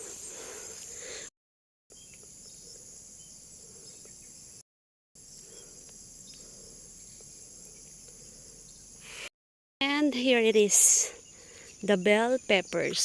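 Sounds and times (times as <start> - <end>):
insects droning: 0.0 - 1.3, 1.9 - 4.6, 5.2 - 13.0
faint ticks and chirps: 1.9 - 4.6, 5.2 - 9.3.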